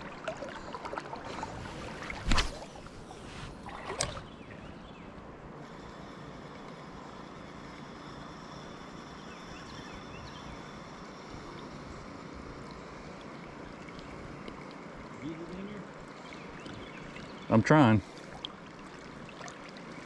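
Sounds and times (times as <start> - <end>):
short sharp knock or splash: 1.4 - 4.2.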